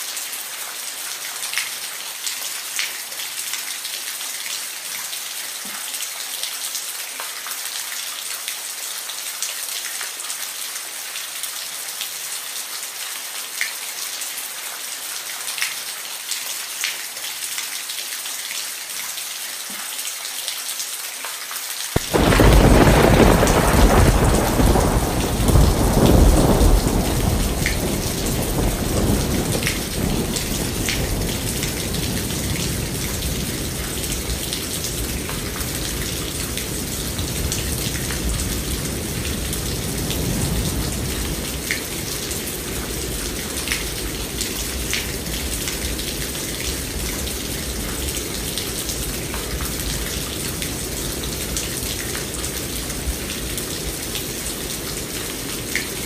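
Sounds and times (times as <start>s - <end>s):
steady rain falling: 0.0s - 56.0s
raindrops ticking on a surface: 14.6s - 56.0s
thunder clap rumbling: 22.0s - 45.5s.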